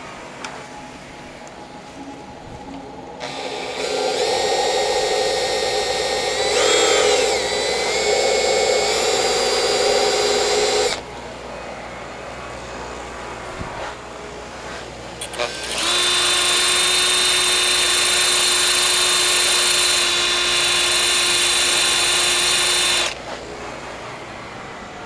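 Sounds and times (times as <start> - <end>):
electric grinder whining: 3.2 - 11.0, 15.2 - 23.3.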